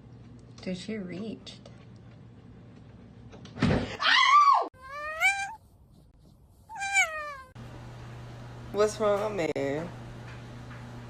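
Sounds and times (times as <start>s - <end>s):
cat meowing: 4.8s - 5.6s, 6.7s - 7.6s.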